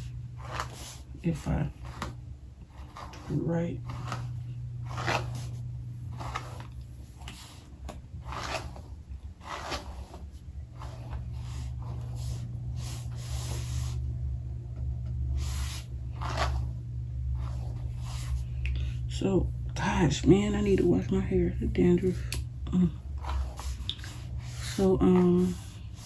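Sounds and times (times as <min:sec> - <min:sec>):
hair rustling and brushing: 0:00.0 - 0:14.1, 0:15.2 - 0:26.0
low hum: 0:00.0 - 0:26.0.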